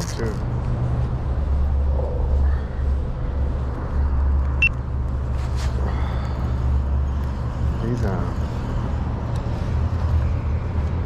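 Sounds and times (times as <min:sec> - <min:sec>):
steady low rumble: 0:00.0 - 0:11.0.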